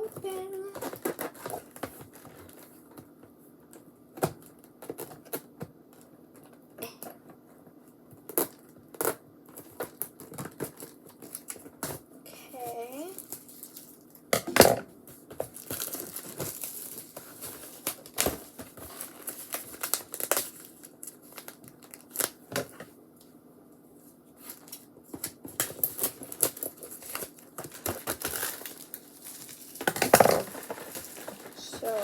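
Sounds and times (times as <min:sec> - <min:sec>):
packaging crinkling and tearing: 0:00.6 - 0:02.7, 0:08.3 - 0:12.0, 0:12.6 - 0:14.3, 0:15.4 - 0:22.8, 0:24.4 - 0:32.0.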